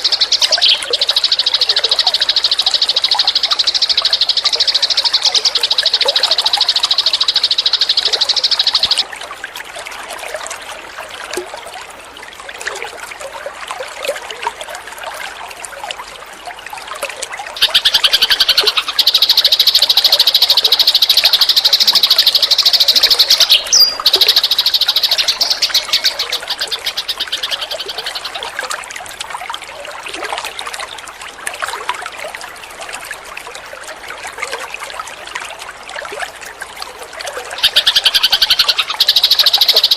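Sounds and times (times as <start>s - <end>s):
sparrows chirping: 0.0s - 9.0s, 17.6s - 28.4s, 37.6s - 39.9s.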